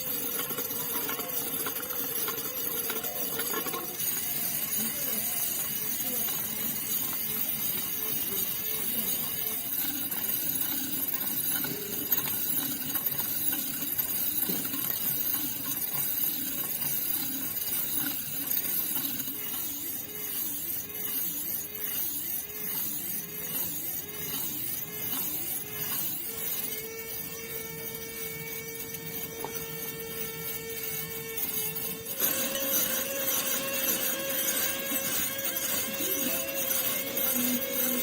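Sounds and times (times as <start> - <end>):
small electric motor humming: 0.0 - 38.0.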